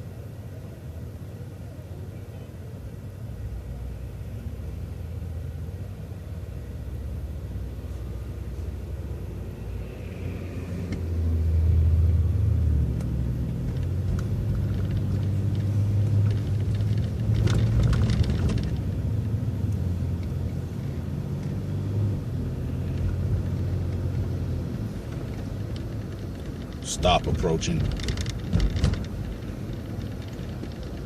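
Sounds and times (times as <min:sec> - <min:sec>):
bus engine droning: 0:00.0 - 0:31.0
rattling clicks: 0:13.0 - 0:18.9, 0:27.7 - 0:31.0.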